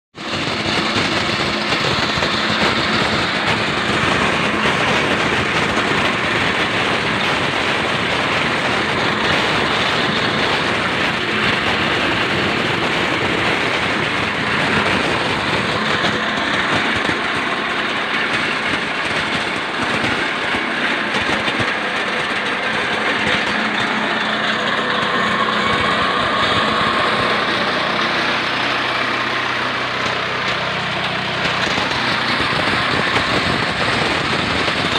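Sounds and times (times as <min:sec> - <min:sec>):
nut splitting machine rattling: 0:00.2 - 0:34.9.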